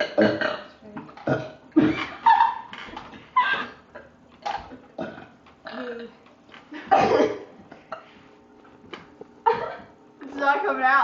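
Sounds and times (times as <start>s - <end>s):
person burping: 0.0s - 2.1s, 4.7s - 6.2s.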